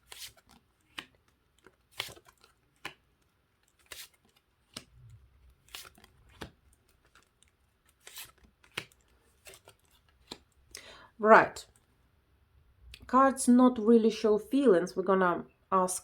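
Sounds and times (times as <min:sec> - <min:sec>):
cards slapping on a table: 0:00.1 - 0:01.2, 0:01.9 - 0:03.1, 0:08.0 - 0:10.5.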